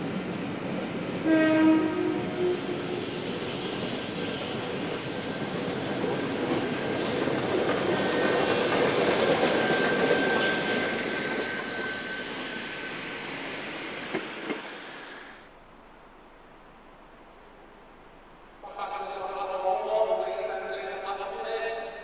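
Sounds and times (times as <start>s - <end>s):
train passing on rails: 0.0s - 15.5s, 18.6s - 22.0s
wheel squeal: 8.0s - 15.2s.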